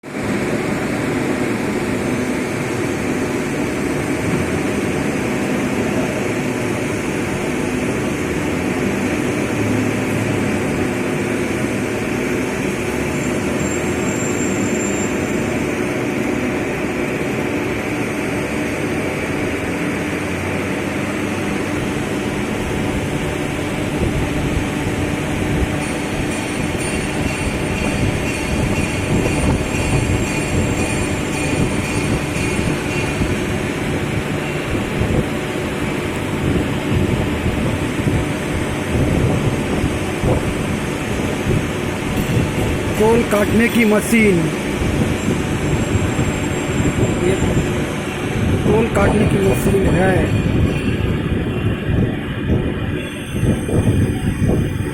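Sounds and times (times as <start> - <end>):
metal lathe running: 0.1 - 54.9.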